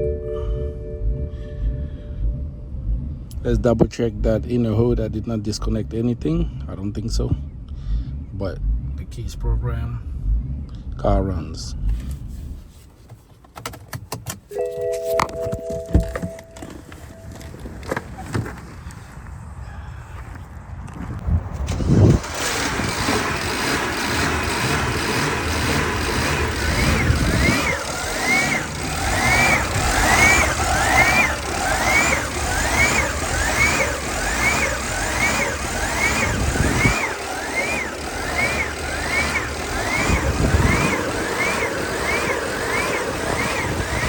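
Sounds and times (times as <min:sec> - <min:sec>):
bell-like chime: 0:00.0 - 0:02.6, 0:14.5 - 0:17.5
continuous low rumble: 0:00.0 - 0:13.5.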